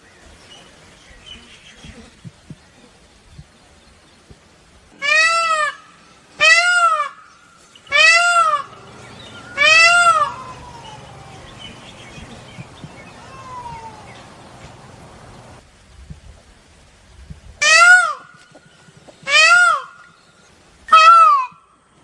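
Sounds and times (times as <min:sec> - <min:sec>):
peacock calling: 0:04.9 - 0:15.6, 0:17.6 - 0:21.7.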